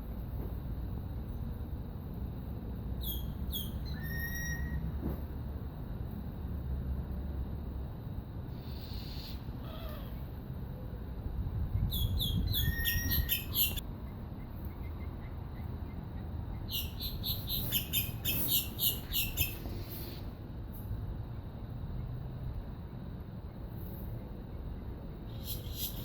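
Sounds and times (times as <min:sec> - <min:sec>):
small birds chirping: 0:03.0 - 0:04.8, 0:08.5 - 0:10.3, 0:11.7 - 0:20.3, 0:25.3 - 0:26.0.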